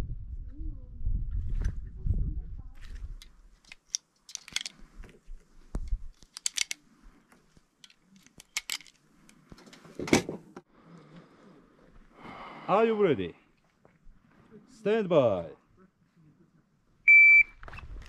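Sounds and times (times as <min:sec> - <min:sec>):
metallic clicks and rattles: 0:02.9 - 0:04.8, 0:05.9 - 0:06.8, 0:07.8 - 0:09.8.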